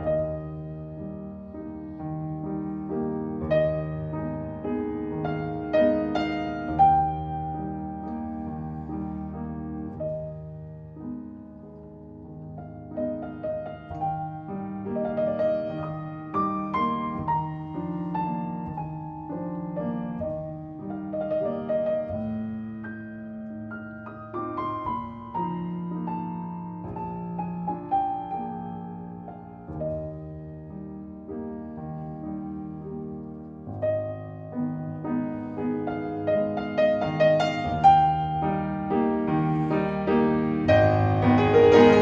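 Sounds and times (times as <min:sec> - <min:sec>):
piano piece: 0:00.0 - 0:42.0.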